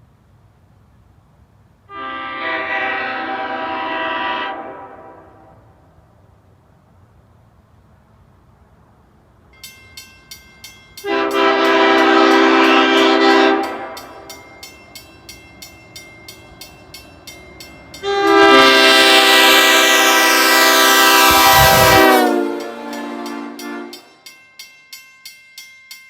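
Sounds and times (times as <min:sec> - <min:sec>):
train horn chord blasts: 0:01.9 - 0:05.7, 0:11.0 - 0:14.3, 0:18.0 - 0:24.2.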